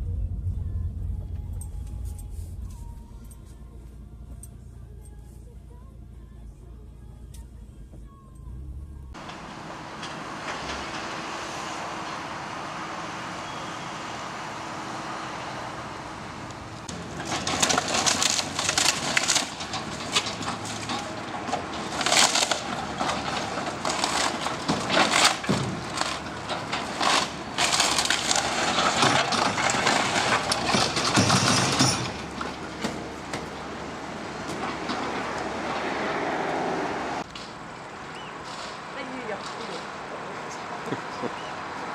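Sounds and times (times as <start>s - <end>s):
steady rumble: 0.0s - 11.0s
breaking timber crunching and cracking: 16.8s - 36.0s.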